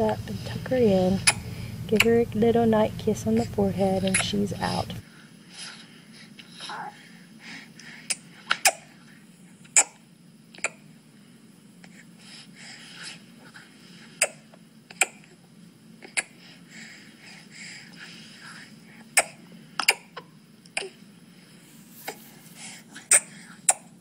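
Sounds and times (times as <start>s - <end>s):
baby-like breathing: 16.1s - 19.2s, 21.9s - 23.7s.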